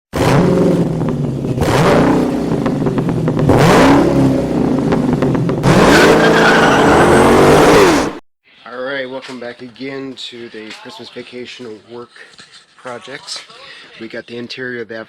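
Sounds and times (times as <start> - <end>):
car engine revving hard: 0.1 - 8.2.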